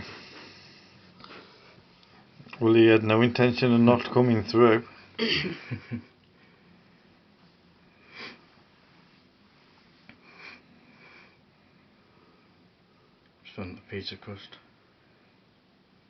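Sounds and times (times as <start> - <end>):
person sniffing: 8.1 - 8.5.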